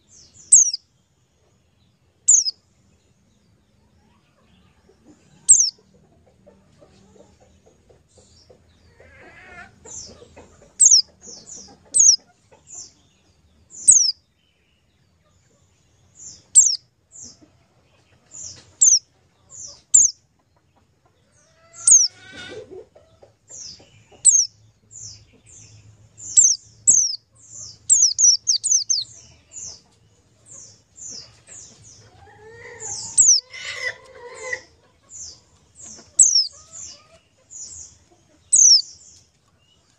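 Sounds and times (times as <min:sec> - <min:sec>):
lower bird calls: 0:00.0 - 0:00.8, 0:02.2 - 0:02.6, 0:05.4 - 0:05.8, 0:08.9 - 0:12.2, 0:13.8 - 0:14.2, 0:16.3 - 0:17.4, 0:18.4 - 0:20.2, 0:21.6 - 0:22.8, 0:23.6 - 0:25.2, 0:26.2 - 0:29.8, 0:30.5 - 0:37.8, 0:38.5 - 0:38.9
bird chirping: 0:00.0 - 0:39.9.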